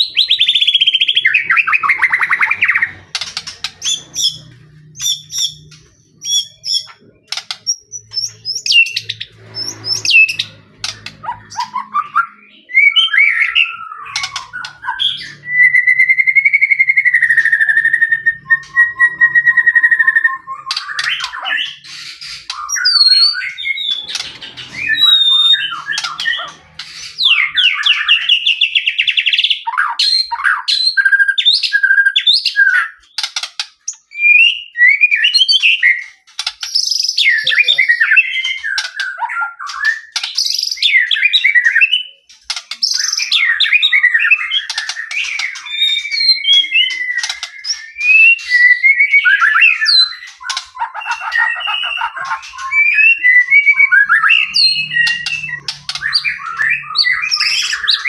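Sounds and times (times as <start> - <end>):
songbird whistling and trilling: 0.0 - 10.6, 11.2 - 58.0
bird chattering notes: 0.0 - 12.6, 20.6 - 28.8, 36.8 - 39.0, 49.7 - 58.0.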